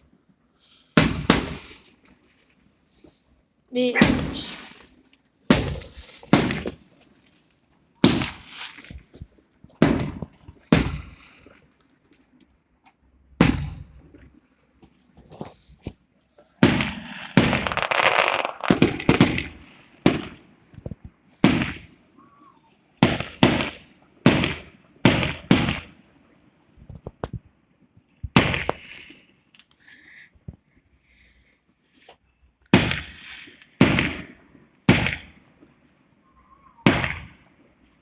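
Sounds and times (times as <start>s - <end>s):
firecrackers banging: 1.0s - 2.2s, 3.8s - 7.1s, 8.0s - 11.4s, 16.6s - 22.1s, 23.0s - 26.0s, 28.2s - 29.2s, 36.8s - 37.5s.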